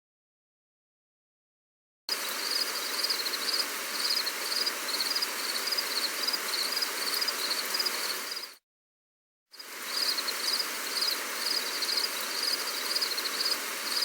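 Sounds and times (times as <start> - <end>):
gentle rain hissing: 2.1 - 8.6, 9.5 - 14.0
insects chirping in trills: 2.1 - 8.6, 9.6 - 14.0.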